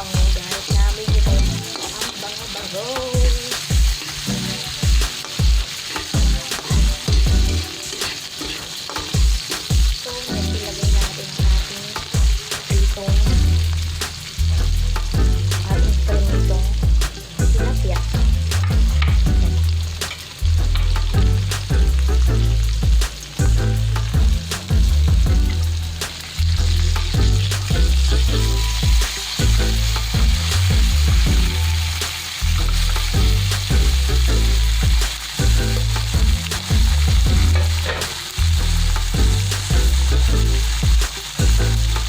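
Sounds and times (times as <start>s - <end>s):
spatula scraping a pan: 0.0s - 12.8s, 37.3s - 39.7s
onion sizzling in hot oil: 0.0s - 42.0s
low beating background music: 3.8s - 11.6s, 12.8s - 42.0s.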